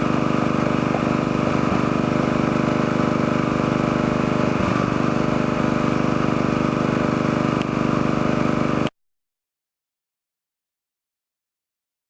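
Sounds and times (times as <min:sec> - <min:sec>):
small engine running: 0:00.0 - 0:08.9.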